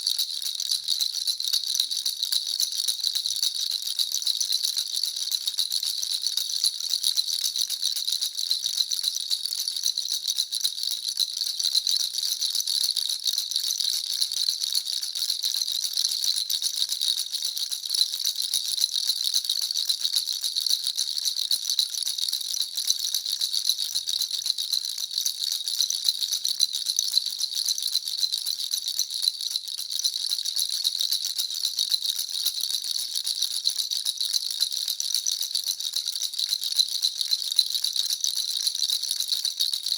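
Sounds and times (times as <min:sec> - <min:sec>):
baby rattle jingling: 0:00.0 - 0:03.3.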